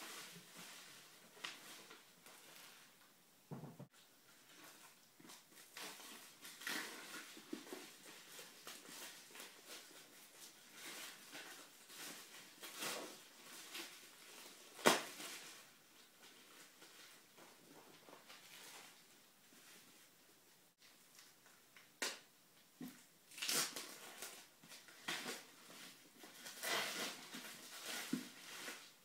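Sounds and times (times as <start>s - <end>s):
books rustling and scraping: 4.2s - 20.1s, 23.8s - 29.0s.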